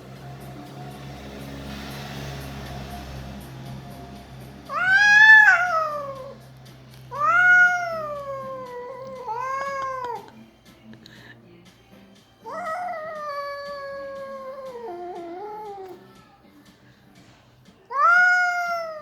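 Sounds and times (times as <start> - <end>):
cat yowling: 4.7 - 6.4, 7.1 - 10.3, 12.4 - 16.0, 17.9 - 19.0.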